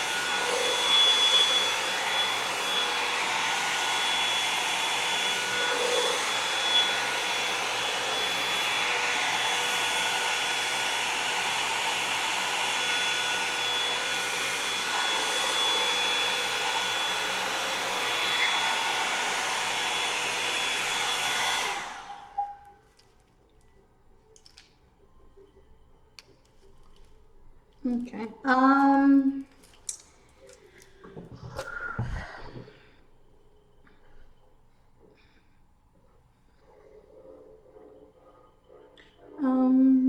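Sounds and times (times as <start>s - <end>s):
hair dryer blowing: 0.0s - 22.7s.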